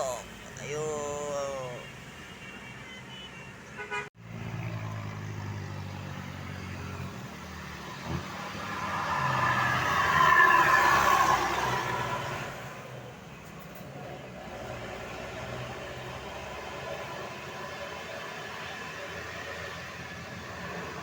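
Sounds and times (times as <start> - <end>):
vehicle passing by: 4.2 - 13.0.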